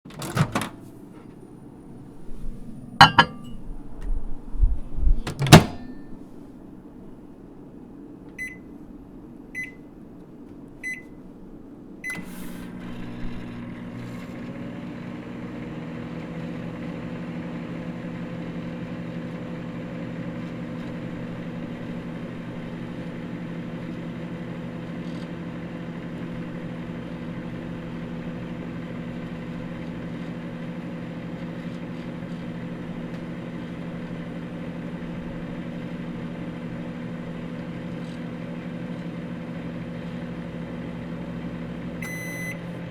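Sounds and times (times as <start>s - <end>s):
microwave starting click: 0.1s - 0.8s, 3.0s - 3.6s, 5.2s - 6.2s, 41.7s - 42.9s
microwave humming: 0.1s - 42.9s
microwave keypad beeping: 3.0s - 3.5s, 8.4s - 8.7s, 9.6s - 9.8s, 10.8s - 11.2s, 12.0s - 12.3s, 42.0s - 42.7s.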